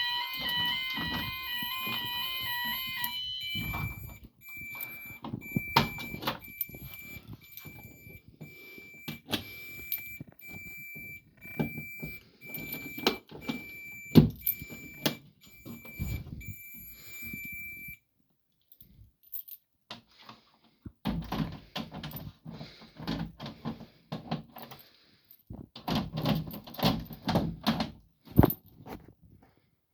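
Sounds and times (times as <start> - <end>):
pulsing fire alarm tone: 0.0 - 18.0.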